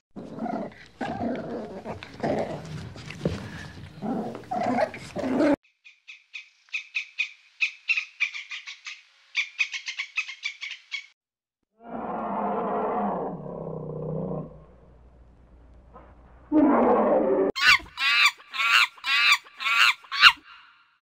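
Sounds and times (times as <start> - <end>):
low rough animal call: 11.8 - 15.0, 16.5 - 17.6
harsh animal call: 16.5 - 20.8.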